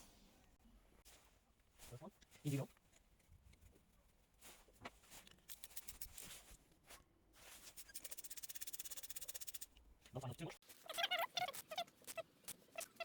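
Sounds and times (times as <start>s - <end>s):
faint handling sounds: 0.0s - 8.5s.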